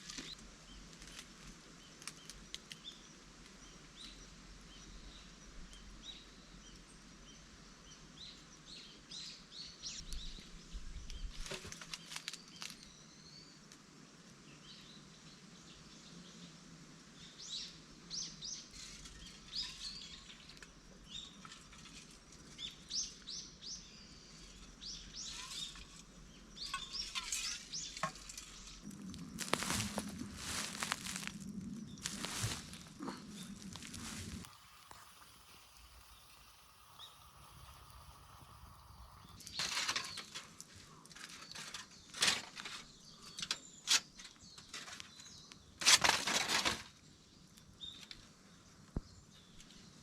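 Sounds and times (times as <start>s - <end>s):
small birds chirping: 17.2s - 45.8s.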